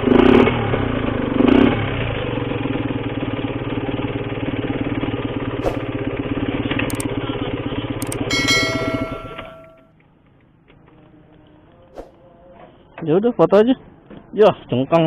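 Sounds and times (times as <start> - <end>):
two-stroke motorcycle engine idling: 0.0 - 10.6.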